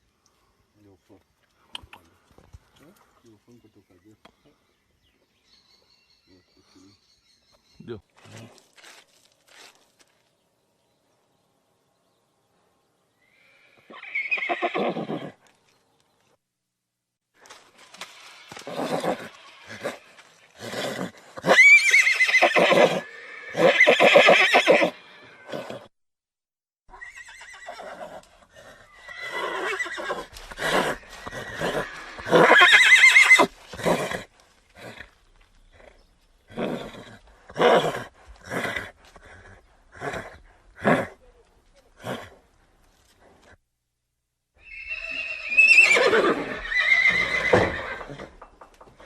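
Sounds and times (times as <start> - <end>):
horses neighing and whinnying: 13.3 - 15.4, 18.4 - 25.9, 26.9 - 41.2, 44.6 - 49.0.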